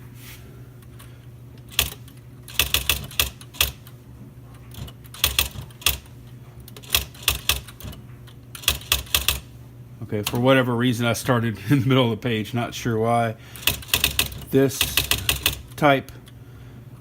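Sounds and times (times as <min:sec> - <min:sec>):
low machine hum: 0:00.0 - 0:17.0
typewriter key strikes: 0:01.7 - 0:03.8, 0:04.7 - 0:06.1, 0:06.7 - 0:08.0, 0:08.6 - 0:09.4, 0:13.6 - 0:15.6.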